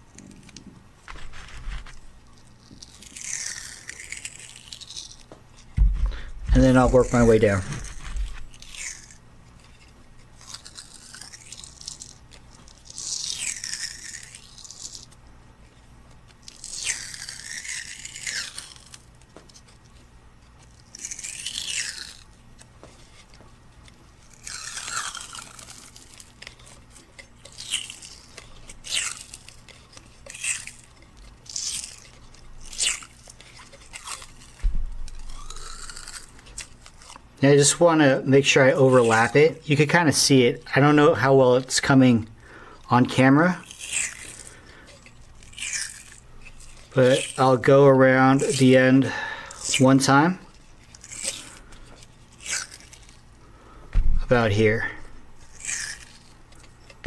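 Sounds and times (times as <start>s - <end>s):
cloth tape peeling off roll: 0.1s - 37.8s.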